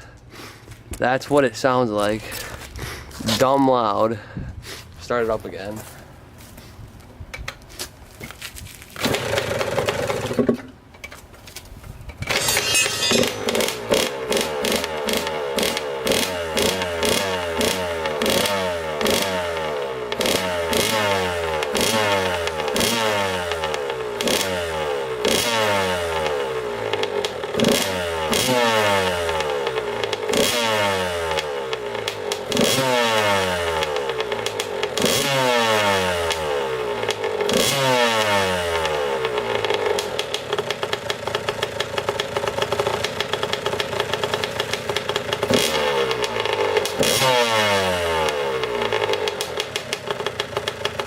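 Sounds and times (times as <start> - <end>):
exhaust crackling pops: 7.3 - 24.5, 31.3 - 47.3, 48.2 - 51.0
two-stroke engine revving: 9.0 - 10.6, 12.3 - 51.0.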